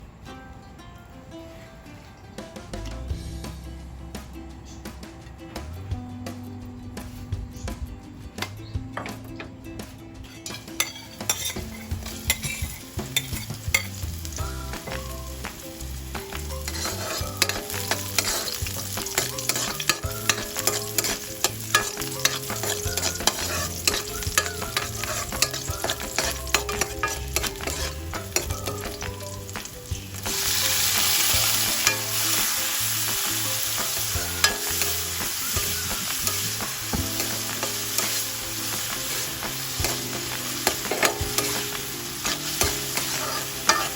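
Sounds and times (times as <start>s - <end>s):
utensil scraping a pan: 10.2s - 14.1s, 16.1s - 32.5s, 33.1s - 43.9s
food sizzling in oil: 10.3s - 43.9s.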